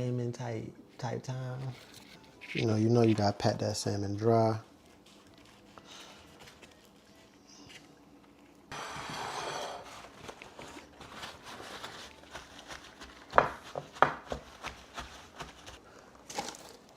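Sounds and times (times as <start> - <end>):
paper towel ripping rustle: 4.5 - 7.2, 9.9 - 16.9.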